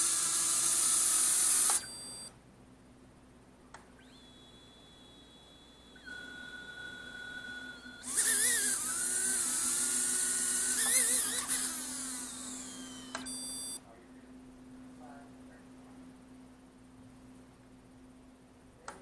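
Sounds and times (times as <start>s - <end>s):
drone motors whining: 0.0s - 2.3s, 3.9s - 13.8s.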